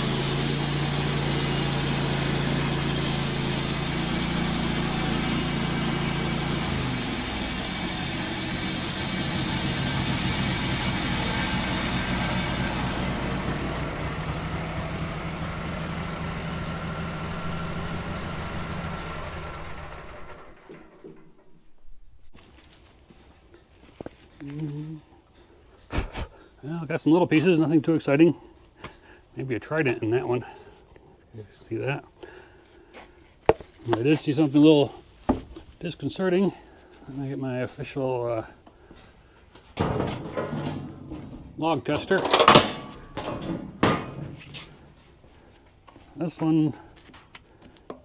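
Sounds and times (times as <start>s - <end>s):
bandsaw blade cutting hiss: 0.0s - 14.3s
sawmill engine running: 0.0s - 21.4s, 39.7s - 47.2s.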